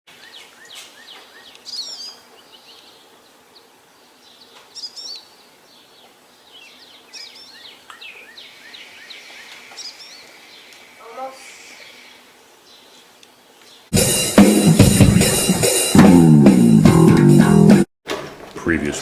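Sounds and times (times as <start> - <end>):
songbirds warbling: 0.1 - 14.0
faint outdoor hiss: 0.1 - 16.0.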